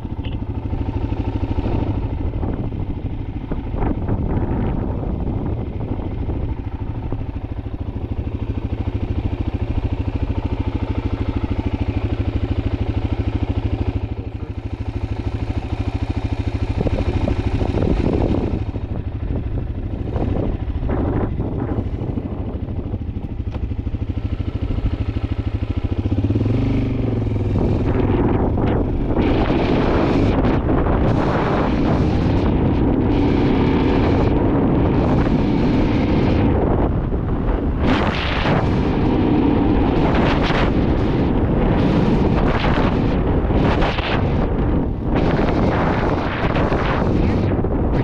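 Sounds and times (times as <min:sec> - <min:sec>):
engine running steadily: 0:00.0 - 0:48.0
rushes of noise: 0:03.6 - 0:48.0.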